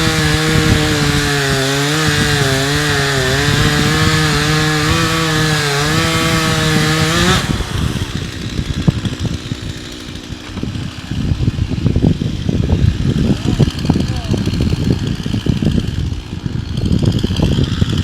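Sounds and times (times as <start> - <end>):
chainsaw cutting wood: 0.0 - 18.0.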